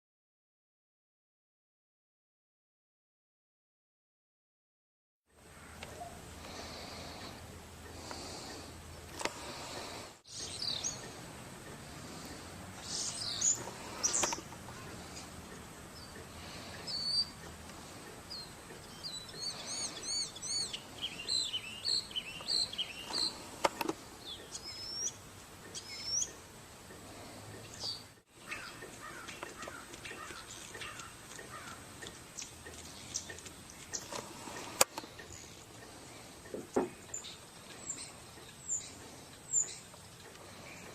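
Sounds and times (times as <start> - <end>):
small birds chirping: 5.4 - 40.9
steady background hiss: 5.4 - 40.9.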